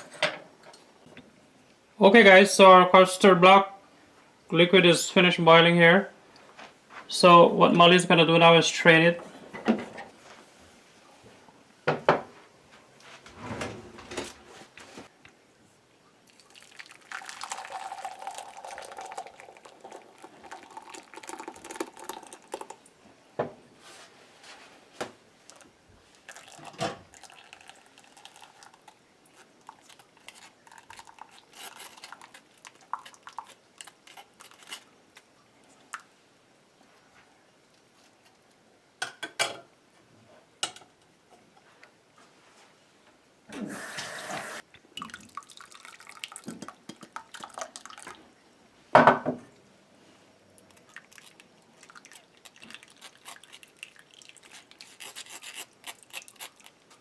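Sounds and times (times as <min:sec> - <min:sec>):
liquid pouring through a strainer: 0:16.2 - 0:22.9, 0:25.5 - 0:34.8, 0:45.0 - 0:48.2, 0:50.7 - 0:56.7.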